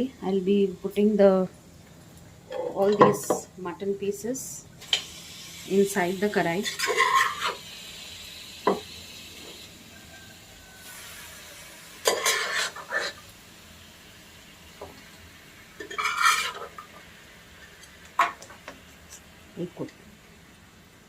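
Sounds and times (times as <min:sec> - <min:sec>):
utensil scraping cooking pot: 0:06.6 - 0:07.6, 0:12.0 - 0:13.2, 0:15.8 - 0:16.9.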